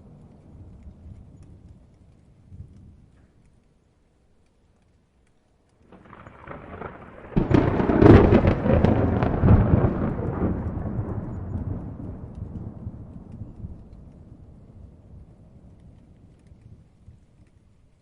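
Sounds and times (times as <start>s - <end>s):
thunderclap: 5.9s - 17.5s.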